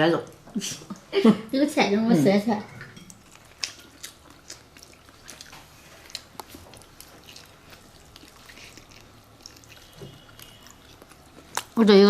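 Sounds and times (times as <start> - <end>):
people chewing food: 0.0 - 12.0.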